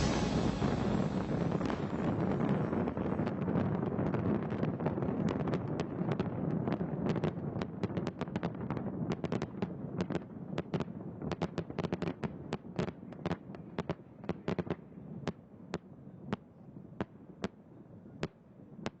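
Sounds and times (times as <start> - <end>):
low rumble: 0.0 - 3.8
fireworks crackling bangs: 0.0 - 9.1.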